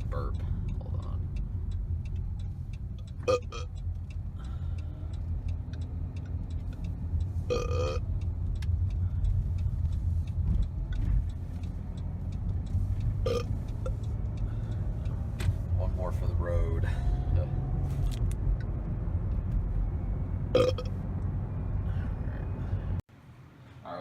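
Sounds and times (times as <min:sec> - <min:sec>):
car rumble: 0:00.0 - 0:24.0
man burping: 0:07.5 - 0:08.0, 0:13.2 - 0:13.5, 0:20.6 - 0:20.9.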